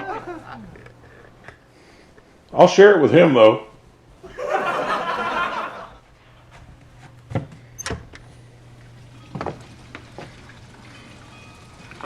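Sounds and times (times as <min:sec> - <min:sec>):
person laughing: 0:00.0 - 0:01.4, 0:04.2 - 0:06.0
low steady hum: 0:00.0 - 0:12.0.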